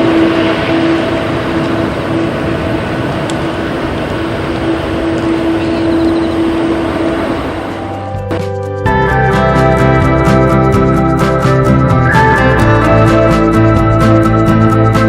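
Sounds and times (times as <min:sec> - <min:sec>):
jet airliner passing overhead: 0:00.0 - 0:09.2.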